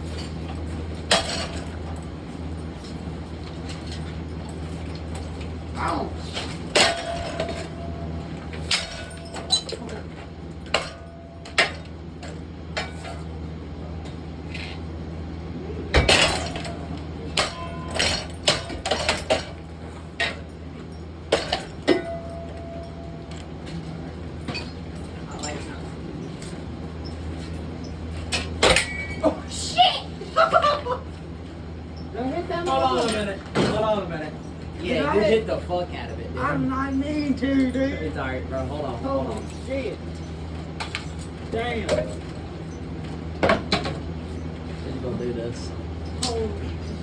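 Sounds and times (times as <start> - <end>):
glass clinking and breaking: 1.1 - 1.9, 6.4 - 11.9, 15.9 - 27.6, 28.3 - 29.4
metallic ringing: 6.6 - 10.0, 16.1 - 25.8, 28.6 - 29.4
rake clanking on light fixture: 16.0 - 20.5.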